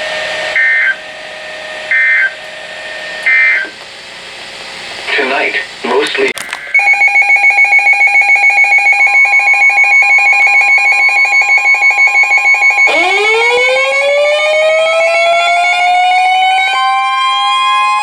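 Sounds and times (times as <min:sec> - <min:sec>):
pulsing two-tone alarm: 0:00.1 - 0:03.7, 0:06.8 - 0:18.0
rising siren wail: 0:06.8 - 0:18.0.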